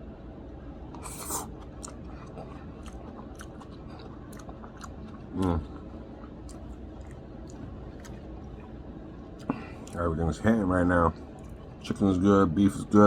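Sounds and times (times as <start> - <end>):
person chewing: 0.9 - 10.0.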